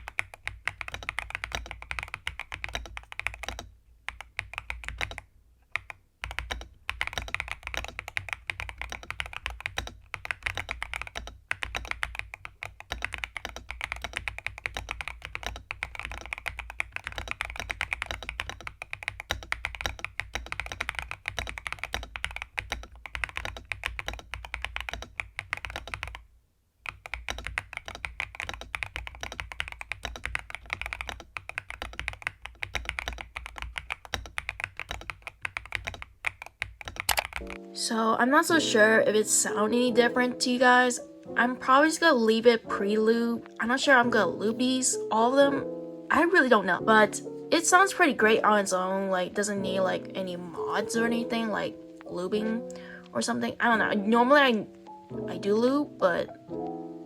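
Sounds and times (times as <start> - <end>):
mechanical keyboard typing: 0.0 - 26.2, 26.8 - 38.8.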